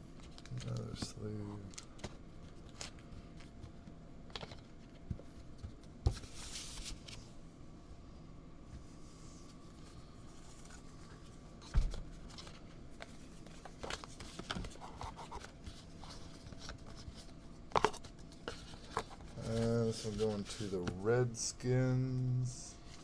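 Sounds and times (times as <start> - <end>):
cards rustling in plastic sleeves: 0.2 - 3.7, 12.1 - 23.0.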